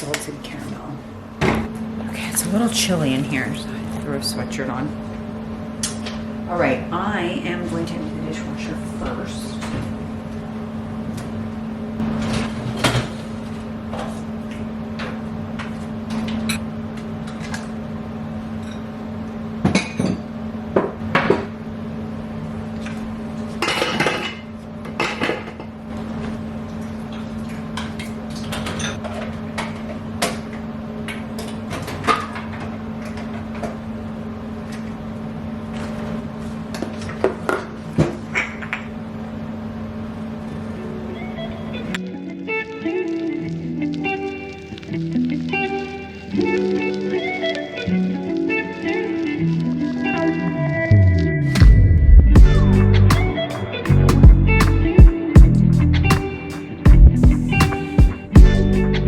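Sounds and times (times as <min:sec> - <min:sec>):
steady low hum: 0:00.0 - 0:12.2, 0:50.6 - 0:59.0
dishes and silverware clinking: 0:23.6 - 0:24.4.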